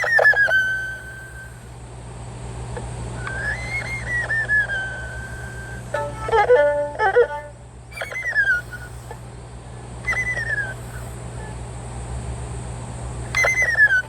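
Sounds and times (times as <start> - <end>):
erhu sliding high notes: 0.0 - 1.8, 3.2 - 9.4, 10.0 - 11.6, 13.2 - 14.0.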